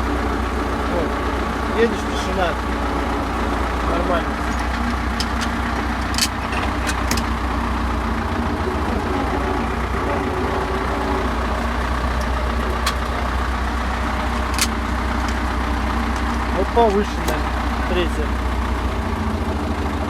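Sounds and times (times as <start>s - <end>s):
tractor diesel engine running: 0.0s - 20.0s.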